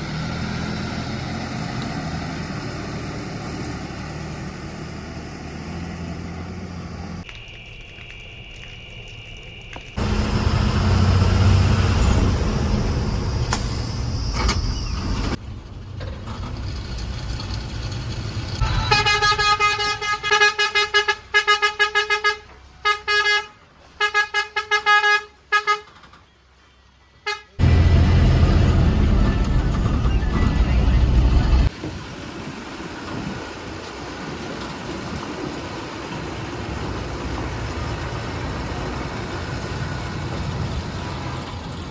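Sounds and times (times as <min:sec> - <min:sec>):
heavy diesel engine running: 0:10.0 - 0:20.2, 0:27.6 - 0:31.7
vehicle horn tooting: 0:18.6 - 0:26.0, 0:27.2 - 0:27.6.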